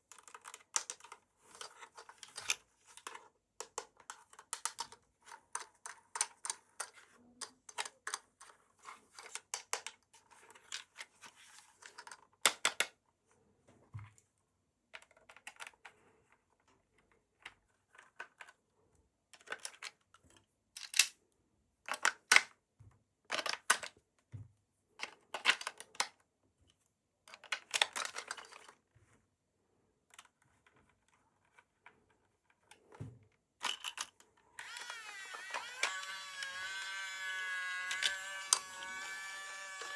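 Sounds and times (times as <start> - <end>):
plastic toy clicks and taps: 2.2 - 8.3.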